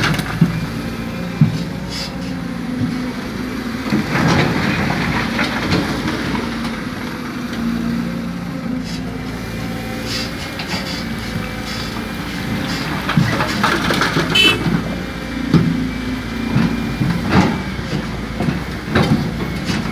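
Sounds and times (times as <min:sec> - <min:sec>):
diesel engine running: 0:00.0 - 0:19.9
machinery clanks and knocks: 0:12.5 - 0:19.9.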